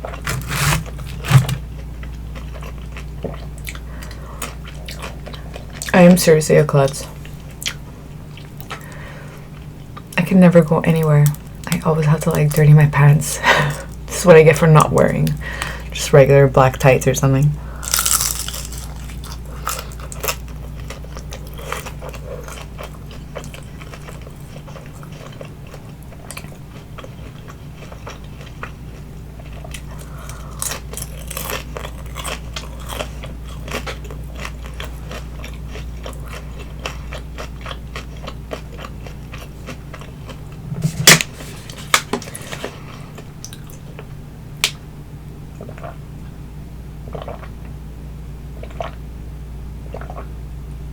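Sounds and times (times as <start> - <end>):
chewing crunchy food: 0.0 - 6.1, 6.8 - 10.2, 17.7 - 44.8, 47.0 - 47.8, 48.5 - 49.0, 49.8 - 50.4.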